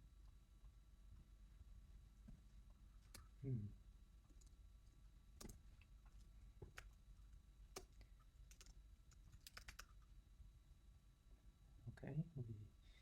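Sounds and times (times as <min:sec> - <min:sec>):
computer keyboard keystrokes: 0:07.8 - 0:09.9.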